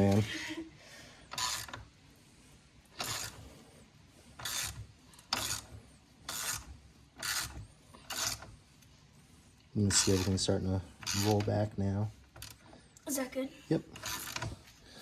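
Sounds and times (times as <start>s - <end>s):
hand tool turning chain adjuster: 1.3s - 1.8s, 3.0s - 3.4s, 4.4s - 5.6s, 6.3s - 8.5s, 9.9s - 11.6s, 14.0s - 14.6s.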